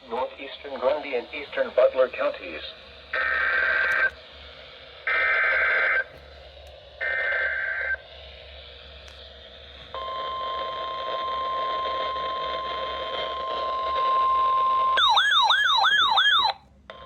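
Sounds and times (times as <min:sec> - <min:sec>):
radio hiss: 0:00.0 - 0:10.0
electronic siren warble: 0:10.0 - 0:16.6
steady alarm tone: 0:15.0 - 0:16.6.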